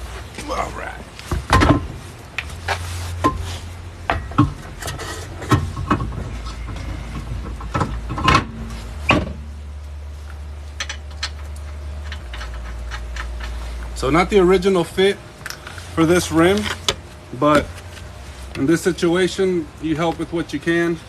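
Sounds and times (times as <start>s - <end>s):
steady low hum: 0.0s - 21.0s
metallic clanks and knocks: 3.2s - 9.5s.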